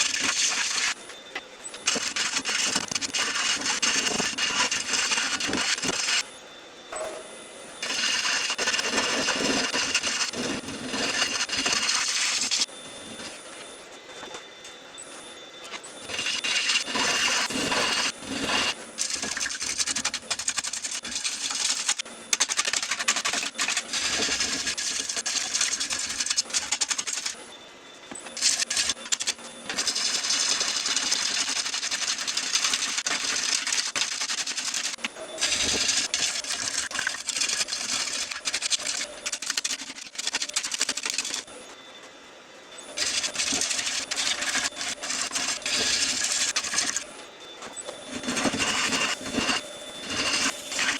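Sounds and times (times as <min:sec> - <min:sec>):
tool scraping wood on lathe: 0:07.8 - 0:13.4, 0:16.0 - 0:21.9, 0:43.0 - 0:47.1, 0:48.1 - 0:50.9.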